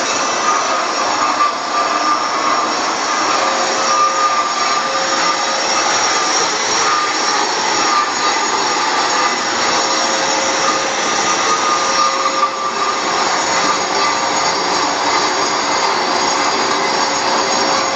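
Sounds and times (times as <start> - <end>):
concrete grinder whining: 0.0 - 17.9
dust extractor running: 0.0 - 17.9.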